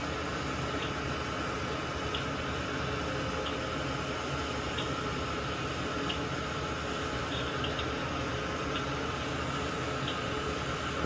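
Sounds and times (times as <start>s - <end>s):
faint constant hum: 0.0s - 11.0s.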